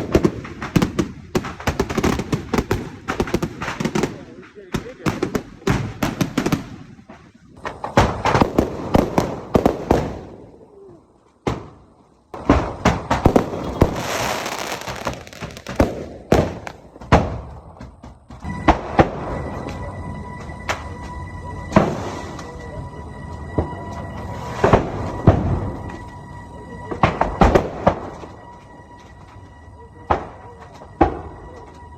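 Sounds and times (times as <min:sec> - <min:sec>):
fireworks cracking and popping: 0:00.0 - 0:10.7, 0:11.4 - 0:19.8.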